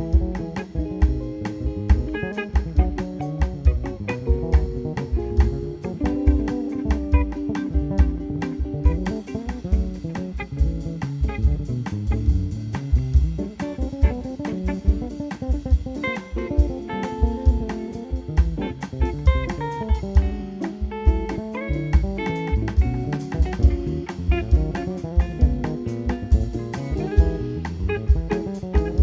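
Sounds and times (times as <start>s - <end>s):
drum kit steady beat: 0.0s - 29.0s
jazz band playing: 0.0s - 29.0s
lead guitar: 0.0s - 29.0s.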